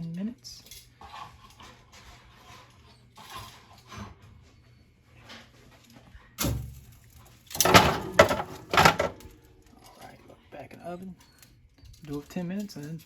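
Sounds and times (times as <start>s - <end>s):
clattering burst: 7.6s - 9.3s.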